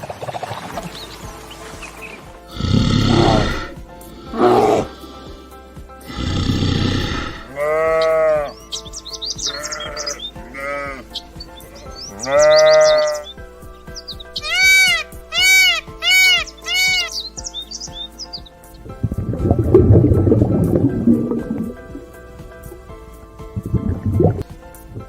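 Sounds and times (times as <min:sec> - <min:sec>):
background music: 0:00.0 - 0:25.0
livestock bleating: 0:06.1 - 0:08.6, 0:09.3 - 0:13.3, 0:14.4 - 0:17.2.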